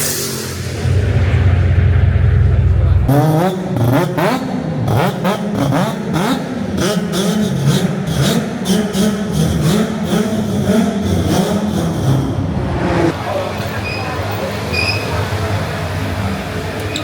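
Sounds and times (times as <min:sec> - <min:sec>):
racing car engines accelerating: 0:00.0 - 0:17.0.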